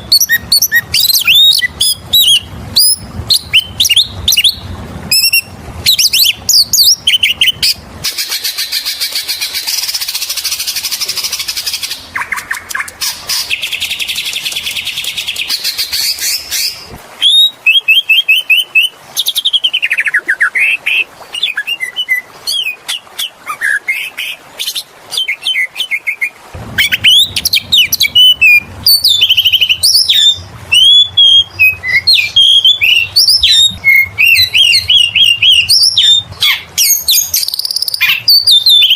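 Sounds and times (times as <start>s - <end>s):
bird whistled phrases: 0.0s - 7.8s, 15.4s - 22.8s, 23.5s - 38.9s.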